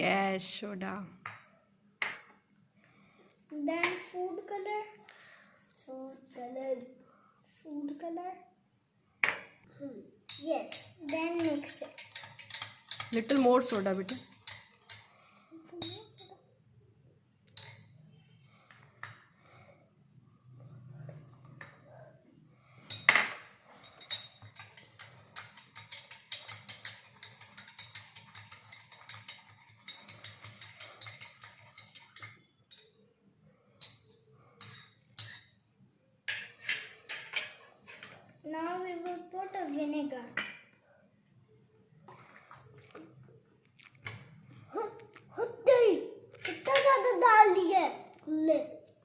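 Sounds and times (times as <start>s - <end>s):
stirrer clinking against container: 10.3s - 16.4s, 17.5s - 18.0s, 22.8s - 33.1s.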